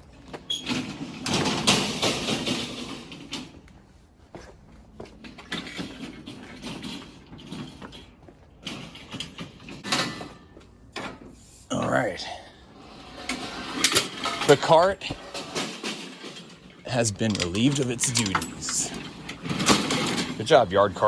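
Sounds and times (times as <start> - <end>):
cart wheels rolling: 0.0 - 11.4, 12.8 - 21.0
metal clanking and scraping: 12.8 - 21.0.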